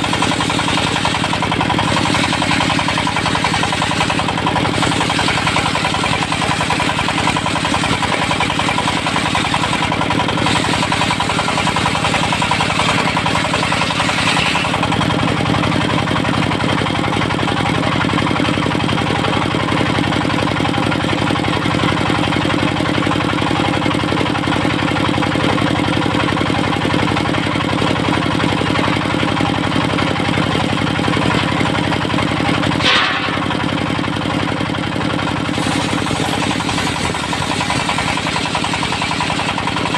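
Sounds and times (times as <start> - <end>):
circular saw cutting wood: 0.0 - 19.0, 27.0 - 39.9
diesel engine running: 0.0 - 39.9.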